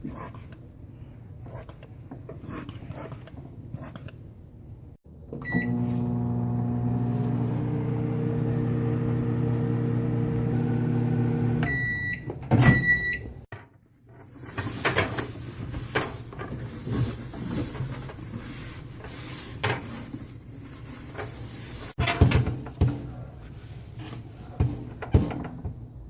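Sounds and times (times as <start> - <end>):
microwave oven humming: 5.3 - 12.1
microwave beeping: 5.3 - 13.4.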